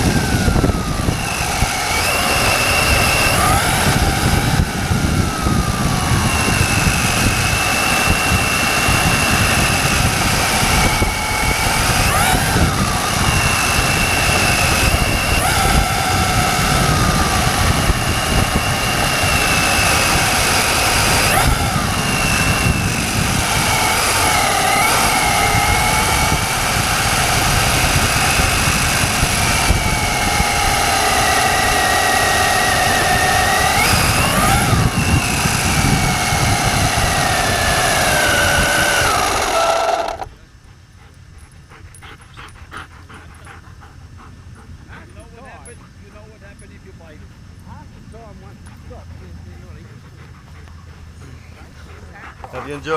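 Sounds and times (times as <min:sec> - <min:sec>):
toy car motor whining: 0:00.0 - 0:40.4.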